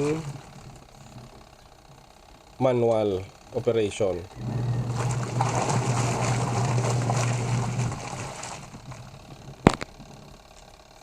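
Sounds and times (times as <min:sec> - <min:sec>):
washing machine motor hum: 0:00.0 - 0:11.0
water sloshing in tub: 0:04.4 - 0:10.3.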